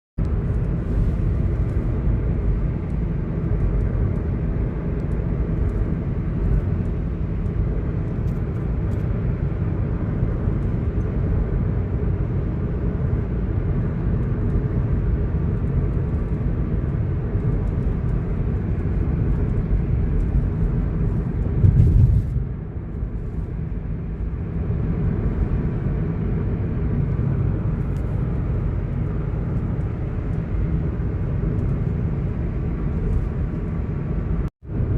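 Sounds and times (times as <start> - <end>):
road and drivetrain rumble: 0.2 - 34.9
car bump: 21.6 - 22.4.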